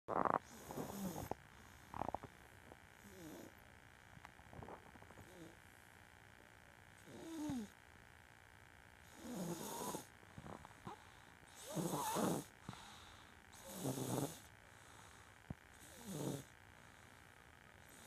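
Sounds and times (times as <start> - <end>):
loud snoring: 0.1 - 2.3, 3.0 - 3.6, 7.0 - 7.7, 9.1 - 10.6, 11.5 - 12.9, 13.6 - 14.5, 15.8 - 16.5.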